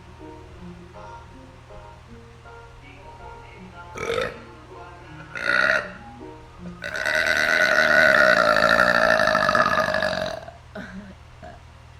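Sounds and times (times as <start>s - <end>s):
woman burping: 6.8s - 11.6s.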